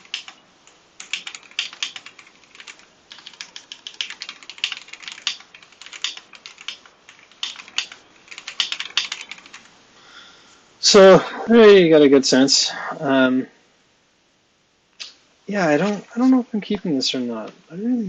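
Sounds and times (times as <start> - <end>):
mechanical keyboard typing: 0.0 - 9.7.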